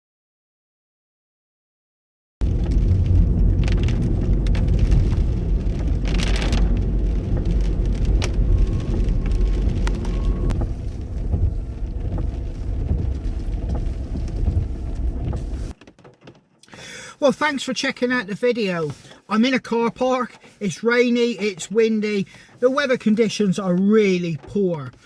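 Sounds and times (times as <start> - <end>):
wind rumbling on microphone: 2.4 - 15.8
raindrops tapping: 2.4 - 17.6, 20.3 - 25.0.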